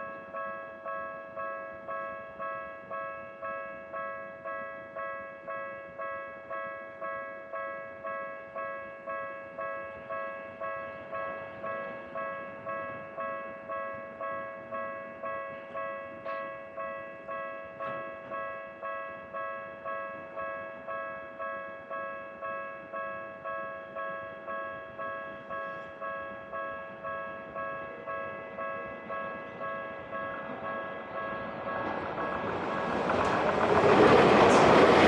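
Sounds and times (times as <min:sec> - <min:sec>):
electronic level crossing bell: 0:00.0 - 0:32.0
faint train rumble: 0:25.4 - 0:35.0.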